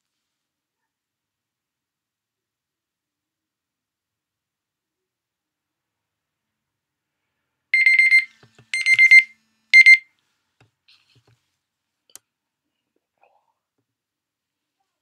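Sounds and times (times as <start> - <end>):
electronic timer beeping: 7.8 - 10.0.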